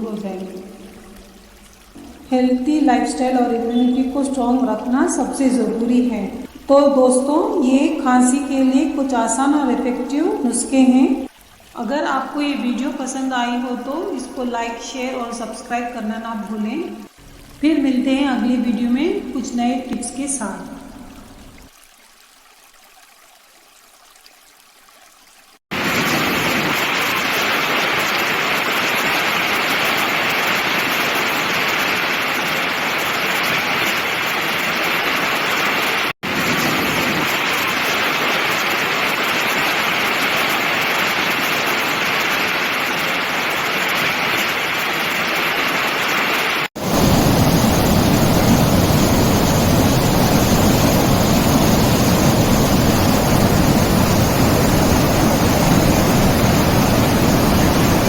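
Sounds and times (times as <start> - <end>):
steady rushing noise: 46.4 - 58.0.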